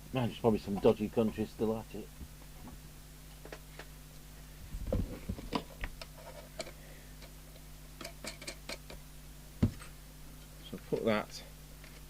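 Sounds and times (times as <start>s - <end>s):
steady low hum: 0.0s - 12.0s
small hardware clicks and knocks: 8.0s - 9.0s.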